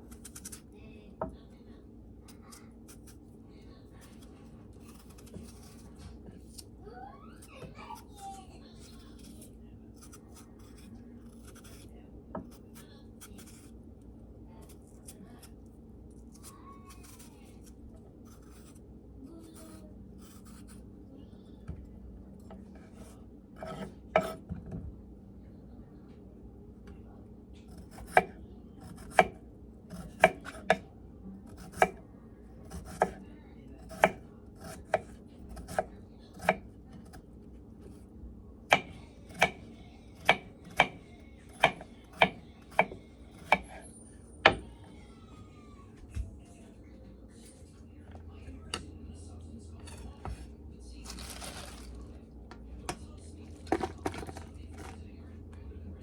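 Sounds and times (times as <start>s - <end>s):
knife chopping on cutting board: 23.0s - 24.6s, 32.7s - 33.2s, 33.9s - 37.2s, 38.7s - 39.6s, 40.2s - 43.8s.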